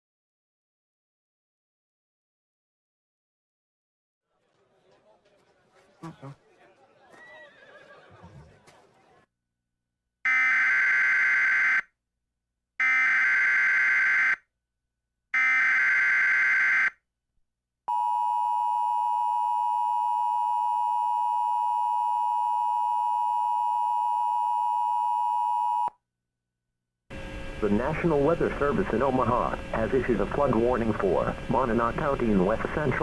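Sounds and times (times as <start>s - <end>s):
steady attention tone: 27.1s - 33.0s.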